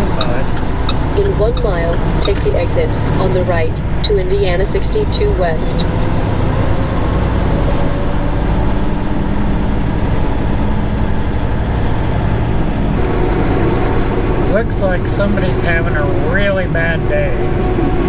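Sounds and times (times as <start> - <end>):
road noise: 0.0 - 18.0
truck diesel engine hum: 0.0 - 18.0.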